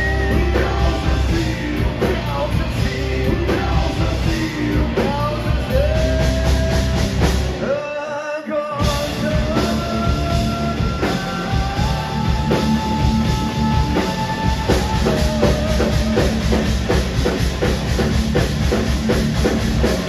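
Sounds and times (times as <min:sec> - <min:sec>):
drum beat: 0:08.8 - 0:20.0.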